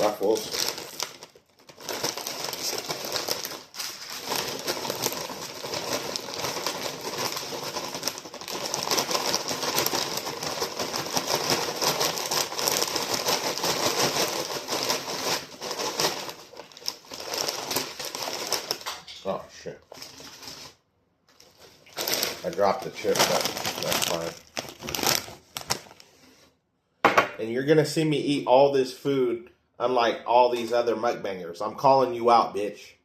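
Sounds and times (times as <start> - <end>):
chips rattling in bag: 0.0 - 19.0, 21.4 - 26.0
chip bag crinkling: 0.0 - 26.2.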